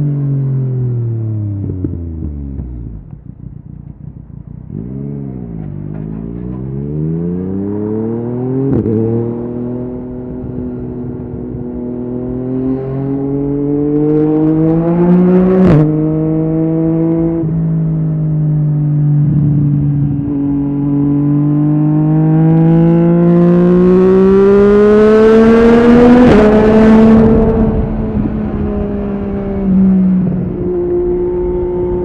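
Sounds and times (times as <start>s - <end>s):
motorcycle engine accelerating: 0.0s - 32.0s
wind rush: 25.4s - 32.0s.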